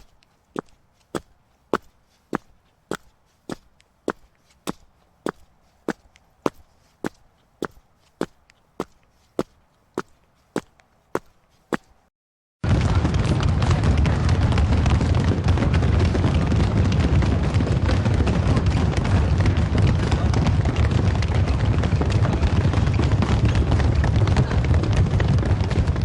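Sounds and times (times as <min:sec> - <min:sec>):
heavy stamping feet: 0:00.0 - 0:12.0.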